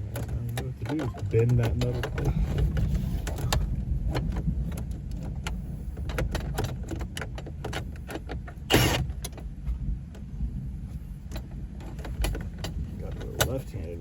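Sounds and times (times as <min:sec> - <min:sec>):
scraping rattle: 0:00.0 - 0:09.8, 0:11.0 - 0:14.0
steady low rumble: 0:00.0 - 0:14.0.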